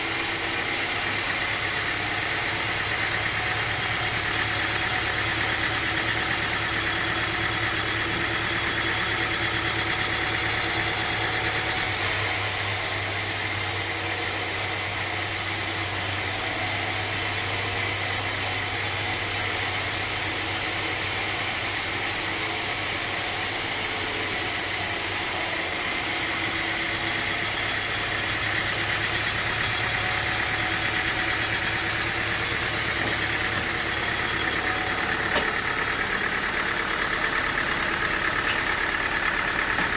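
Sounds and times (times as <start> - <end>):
bright machinery hiss: 0.0 - 0.5, 11.5 - 25.8
sawmill machinery humming: 0.0 - 39.9.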